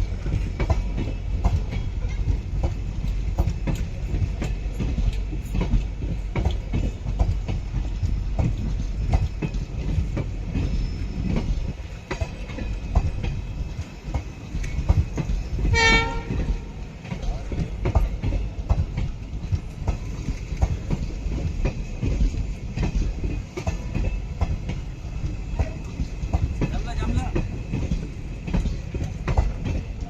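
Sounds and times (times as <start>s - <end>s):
train coaches rumbling past: 0.0s - 30.0s
wheels clicking over rail joints: 0.0s - 30.0s
train horn note: 15.6s - 16.8s.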